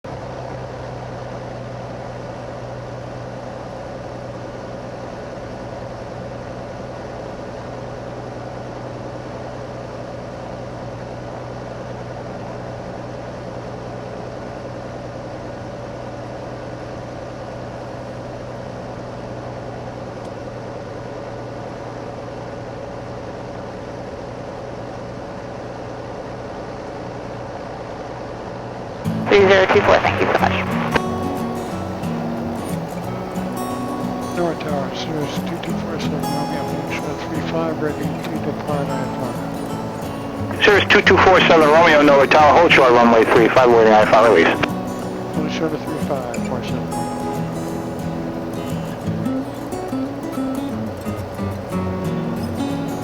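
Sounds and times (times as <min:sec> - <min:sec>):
aircraft engine drone in cabin: 0:29.1 - 0:53.0.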